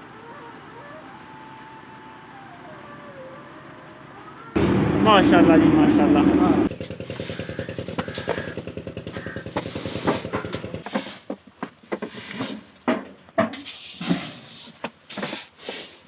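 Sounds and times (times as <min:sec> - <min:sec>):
small engine running: 0:04.5 - 0:11.0.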